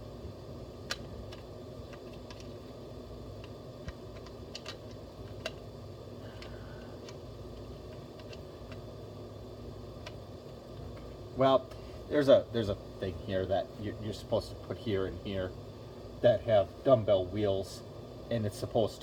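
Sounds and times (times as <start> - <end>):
low room hum: 0.0 - 19.0
plastic toy parts clicking: 0.8 - 2.5, 3.4 - 5.6, 7.9 - 8.8.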